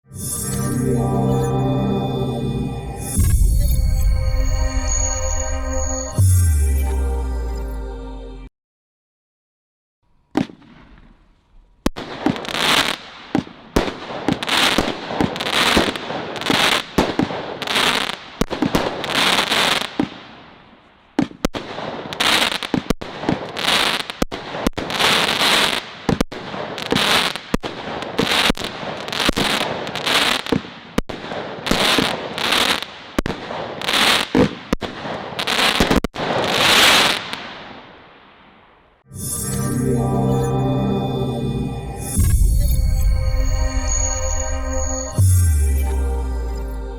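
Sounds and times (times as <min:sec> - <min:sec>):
firework bangs and crackles: 0:10.3 - 0:39.0.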